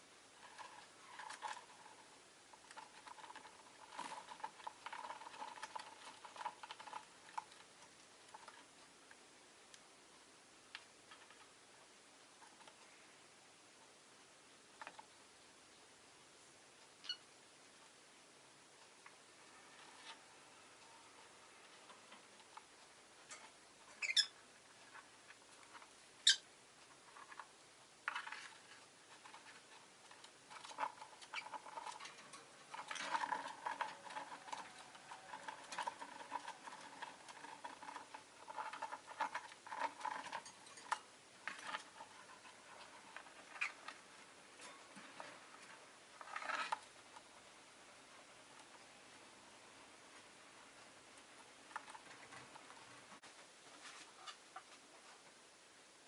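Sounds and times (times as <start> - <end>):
lovebirds chirping: 23.9 - 24.4, 26.2 - 26.5
lovebirds chattering softly: 24.0 - 24.4, 26.2 - 26.5.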